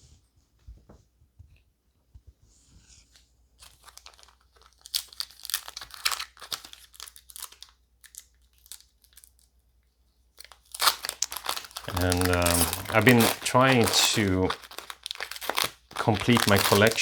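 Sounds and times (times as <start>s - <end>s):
wrapper crinkling and tearing: 3.6s - 9.5s, 10.4s - 17.0s.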